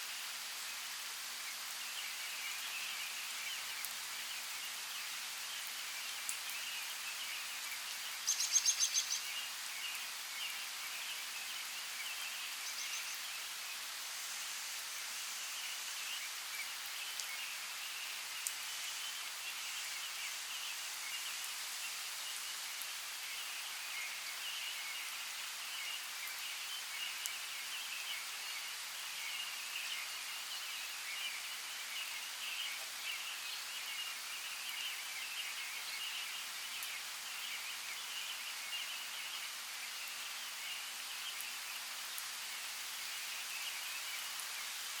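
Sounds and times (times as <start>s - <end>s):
light rain on leaves: 0.0s - 45.0s
birds twittering: 7.6s - 9.9s.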